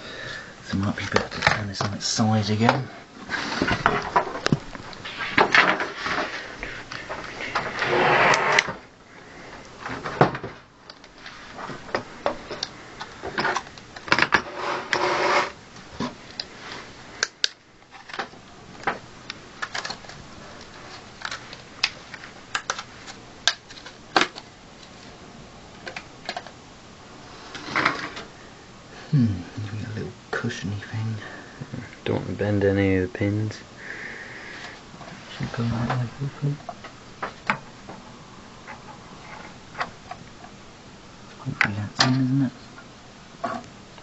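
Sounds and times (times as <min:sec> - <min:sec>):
rustling: 0:00.0 - 0:26.6.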